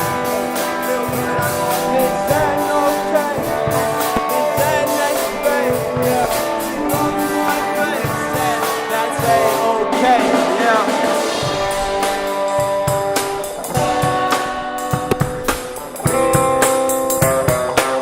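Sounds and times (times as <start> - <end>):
rock music: 0.0 - 18.0
person singing: 0.7 - 12.5.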